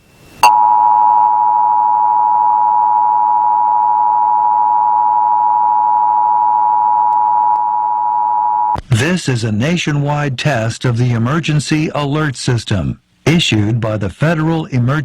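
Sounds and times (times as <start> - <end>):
two-tone alarm: 0.4 - 8.8.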